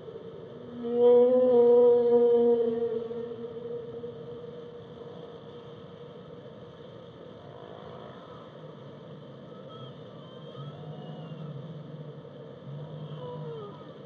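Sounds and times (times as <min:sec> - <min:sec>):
underwater rumble and hiss: 0:00.0 - 0:14.0
whale calls: 0:09.5 - 0:14.0.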